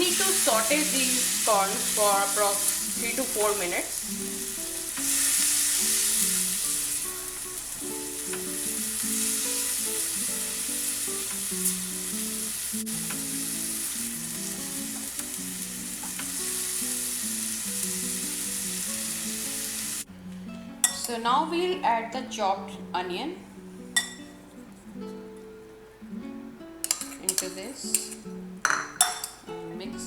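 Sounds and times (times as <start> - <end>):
corn sizzling in butter: 0.0 - 20.1
soft plucked background music: 0.0 - 30.0.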